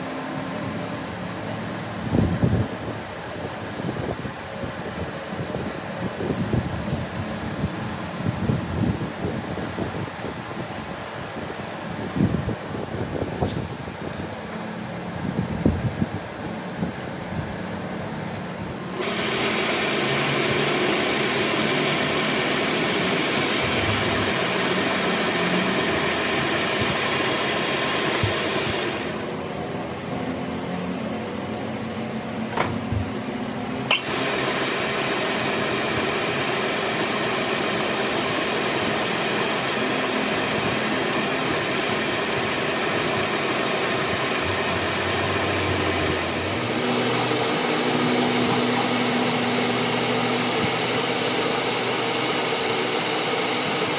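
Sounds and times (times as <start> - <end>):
workshop machine humming: 13.8 - 53.9.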